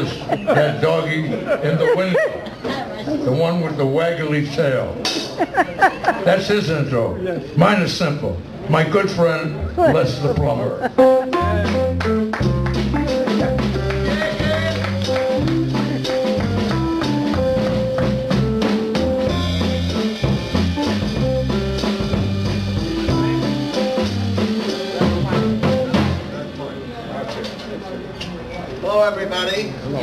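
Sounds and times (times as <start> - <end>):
drum kit: 5.0 - 5.6, 9.5 - 26.5
bass line: 9.4 - 26.3.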